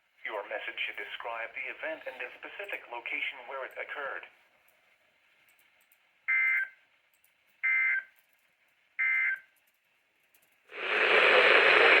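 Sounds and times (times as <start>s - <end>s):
radio static hiss: 0.3s - 4.3s, 10.7s - 12.0s.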